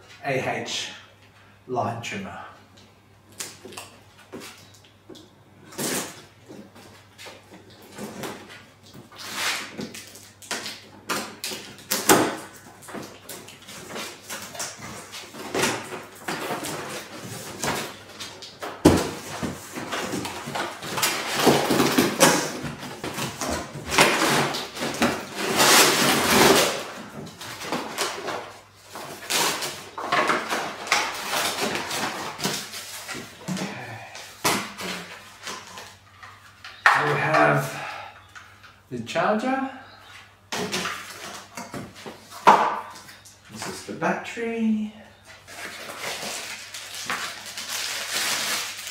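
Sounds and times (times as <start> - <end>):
packaging rustling: 5.7 - 37.0, 45.3 - 48.9.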